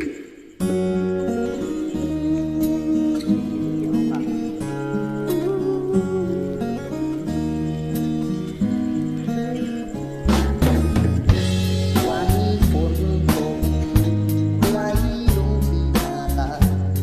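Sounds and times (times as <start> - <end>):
guitar over sustained chords: 0.6 - 10.2
drums and bass beat: 10.2 - 17.0.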